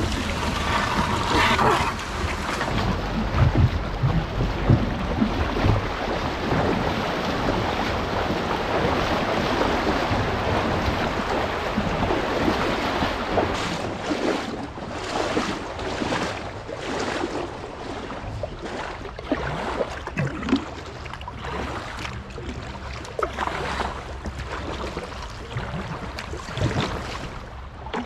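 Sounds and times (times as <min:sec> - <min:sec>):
wind buffeting microphone: 0:00.0 - 0:18.6
brook water rushing: 0:00.0 - 0:28.0
paddle splashes: 0:00.0 - 0:28.0.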